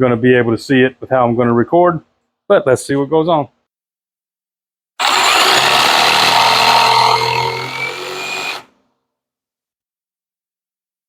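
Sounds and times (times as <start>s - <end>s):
jigsaw cutting wood: 5.0s - 8.7s.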